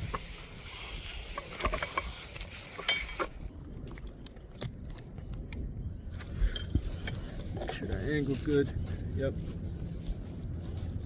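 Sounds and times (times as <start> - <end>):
crowbar clinking: 2.9 - 3.3.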